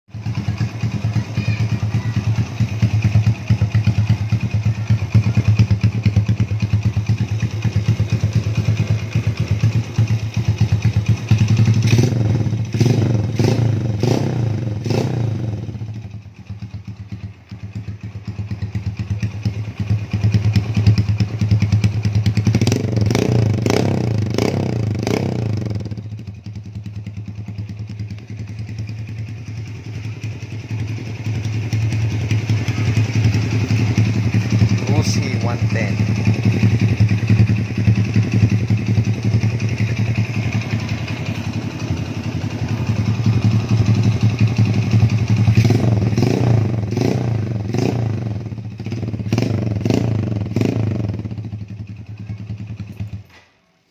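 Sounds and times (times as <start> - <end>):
motorcycle engine idling: 0.1 - 53.4.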